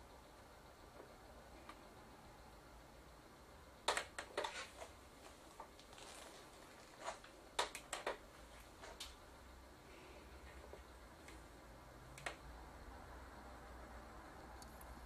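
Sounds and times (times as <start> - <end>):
faint low hum: 0.0 - 15.0
clicks handling tv controls: 7.0 - 8.2, 12.1 - 12.4.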